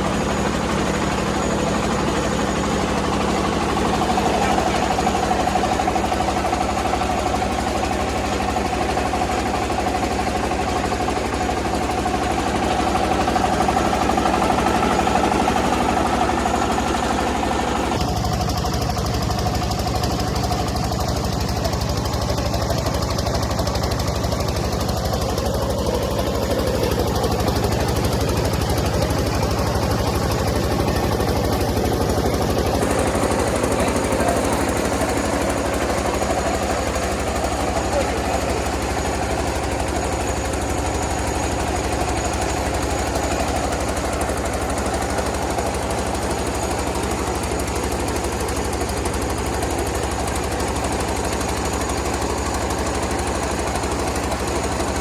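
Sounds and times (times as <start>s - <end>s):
milling machine knocking: 23.4s - 55.0s.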